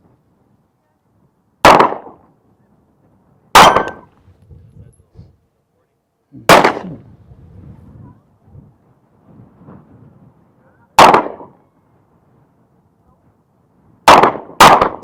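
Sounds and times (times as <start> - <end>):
pistol shots: 1.6 - 2.2, 3.5 - 4.1, 6.5 - 7.0, 11.0 - 11.5, 14.0 - 15.0.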